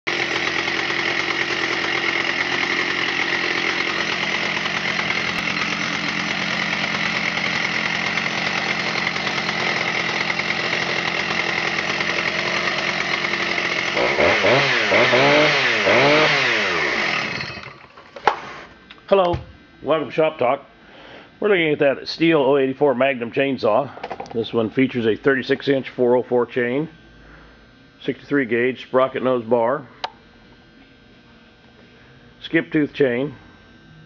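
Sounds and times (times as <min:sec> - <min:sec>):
chainsaw revving: 0:00.1 - 0:18.7
chainsaw engine running: 0:00.1 - 0:20.2.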